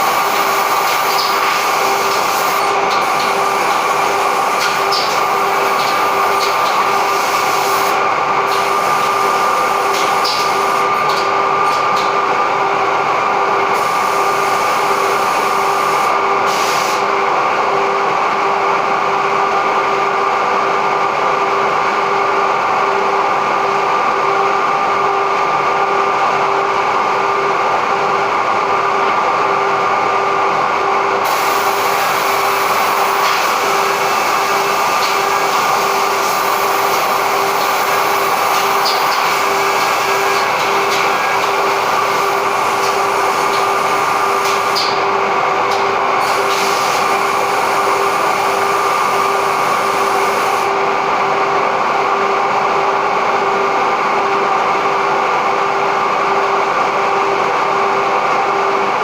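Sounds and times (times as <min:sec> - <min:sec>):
machine whine over hiss: 0:00.0 - 0:11.9, 0:13.4 - 0:17.2, 0:31.2 - 0:45.2, 0:46.2 - 0:50.8.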